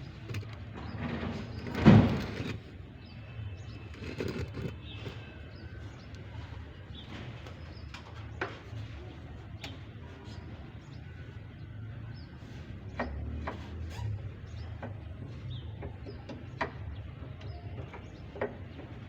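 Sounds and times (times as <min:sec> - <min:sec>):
loud clunk: 0:00.3 - 0:02.7.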